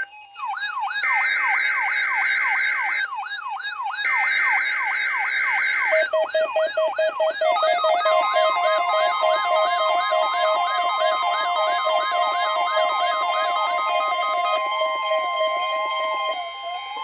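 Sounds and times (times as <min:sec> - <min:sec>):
rapid pulsing low beep: 0:06.3 - 0:17.0
steady high tone: 0:07.4 - 0:17.0.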